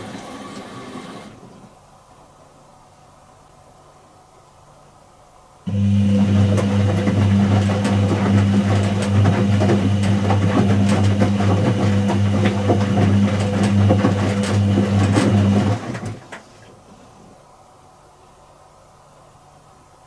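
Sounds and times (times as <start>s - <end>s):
washing machine motor hum: 5.7s - 16.9s.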